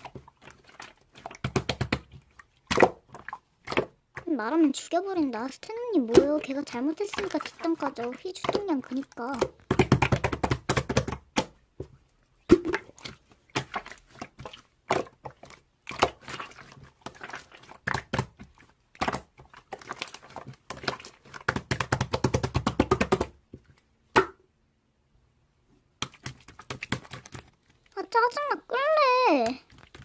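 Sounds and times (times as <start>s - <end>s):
slime squishing with sticky clicks: 0.0s - 4.4s, 12.4s - 24.4s.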